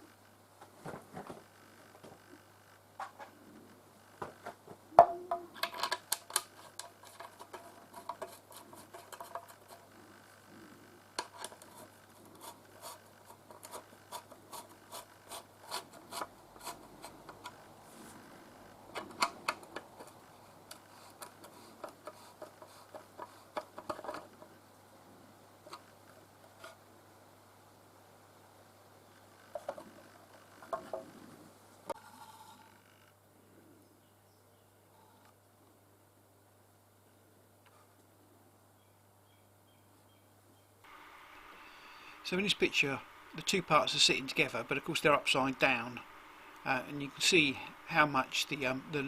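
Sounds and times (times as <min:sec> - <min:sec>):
plastic parts clicking together: 0:05.4 - 0:09.6.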